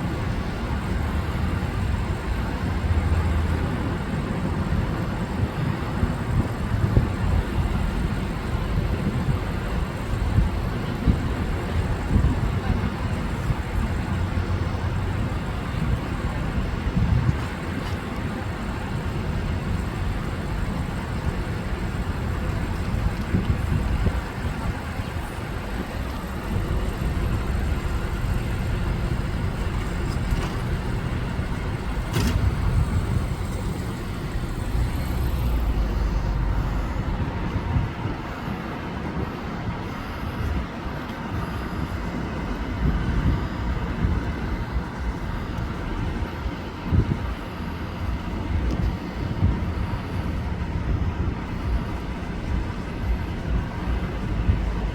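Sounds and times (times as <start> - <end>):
passing cars rumbling: 5.9 - 39.0.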